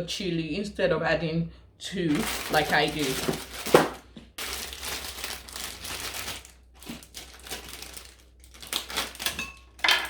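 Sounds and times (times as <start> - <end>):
plastic packaging crinkling: 2.1 - 9.9.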